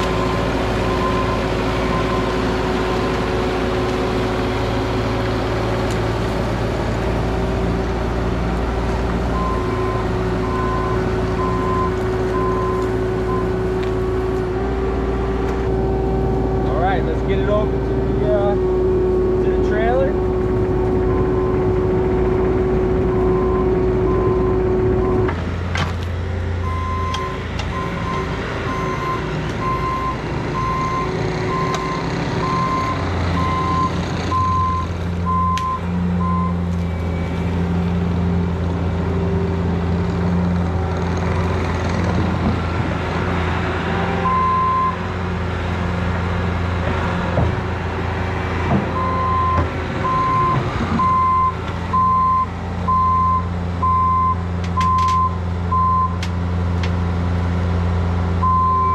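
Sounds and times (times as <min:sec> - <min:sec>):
diesel engines running under load: 0:00.0 - 0:58.9
steady whine: 0:12.3 - 0:25.4
backup alarm beeping: 0:49.0 - 0:56.2.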